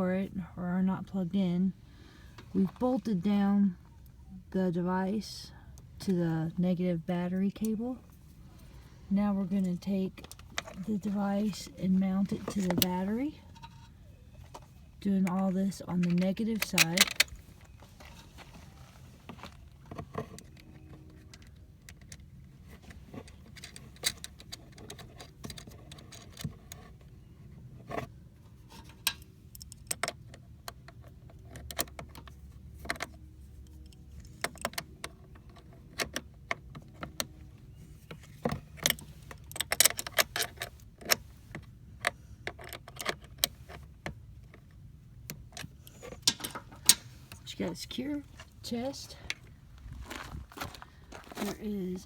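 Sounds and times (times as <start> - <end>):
metal parts and tool clinking: 45.8 - 49.4.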